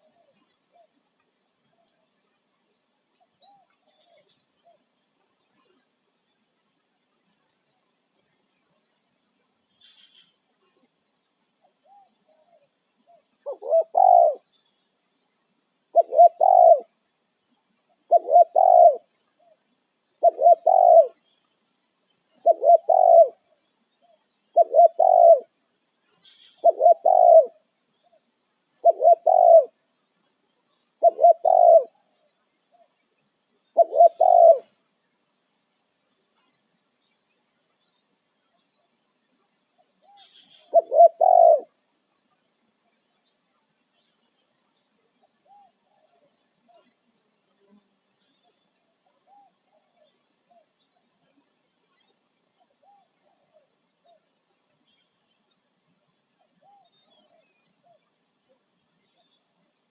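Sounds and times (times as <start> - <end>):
faint high chirp: 9.7 - 10.4, 39.8 - 41.7
dove cooing: 13.4 - 14.4, 15.9 - 16.9, 18.1 - 19.1, 20.2 - 21.2, 22.4 - 23.4, 24.6 - 25.5, 26.6 - 27.6, 28.8 - 29.8, 31.0 - 32.0, 33.8 - 34.7, 40.1 - 41.7.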